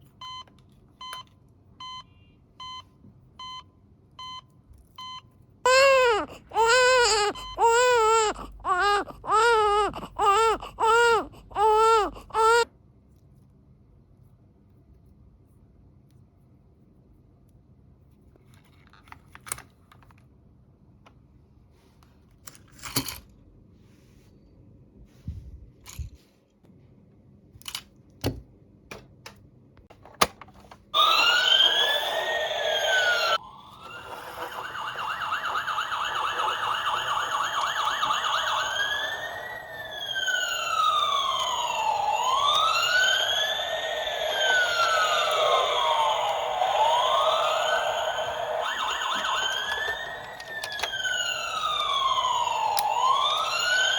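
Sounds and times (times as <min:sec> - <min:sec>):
toy electronic siren: 0:05.0 - 0:12.7, 0:31.0 - 0:53.9.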